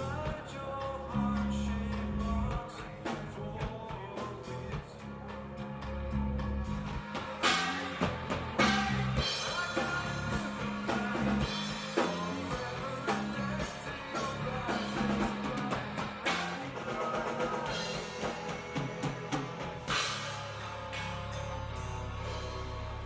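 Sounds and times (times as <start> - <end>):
grunge rock band playing: 0.0 - 23.0
drum kit hits: 7.0 - 22.8.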